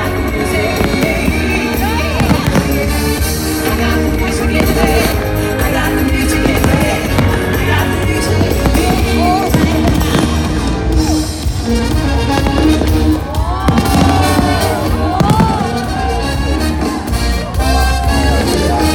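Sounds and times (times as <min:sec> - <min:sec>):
fireworks bursting: 0:00.0 - 0:18.9
loud music playing: 0:00.0 - 0:18.9.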